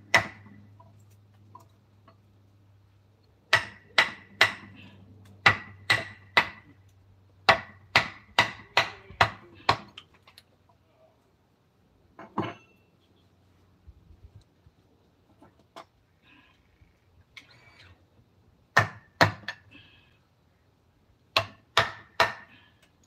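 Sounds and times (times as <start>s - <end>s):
mallet striking chisel into wood: 0.1s - 0.5s, 3.5s - 4.7s, 5.4s - 6.6s, 7.5s - 9.9s, 18.8s - 19.6s, 21.3s - 22.5s.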